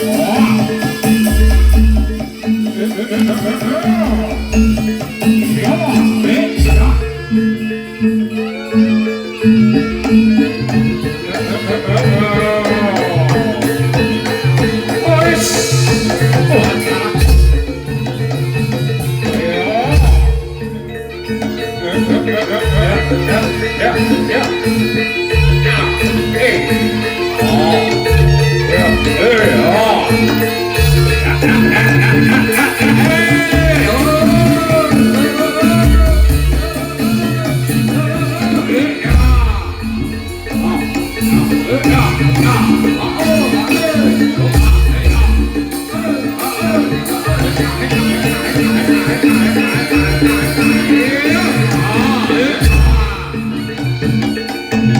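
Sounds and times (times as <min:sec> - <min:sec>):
drums and pitched percussion: 0:00.0 - 0:54.9
wavering sung melody: 0:00.0 - 0:54.9.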